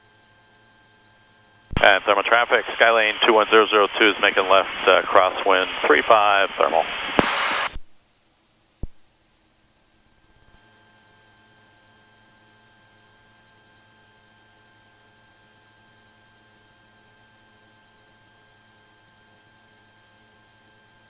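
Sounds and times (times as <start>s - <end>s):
electrical hum and buzz: 1.7s - 7.8s.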